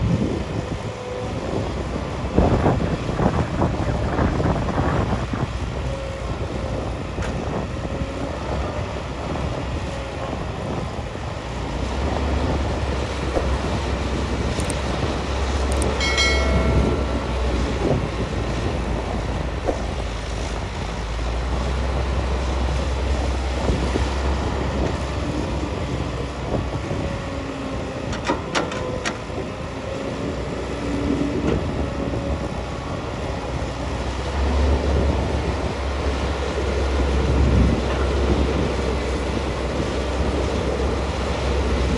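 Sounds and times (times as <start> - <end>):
excavator engine and hydraulics: 0.5 - 41.9
metal clanks: 15.7 - 18.2.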